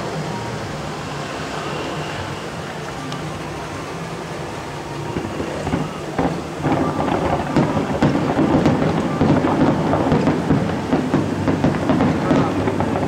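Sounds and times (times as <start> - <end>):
fireworks bursting: 4.4 - 13.0.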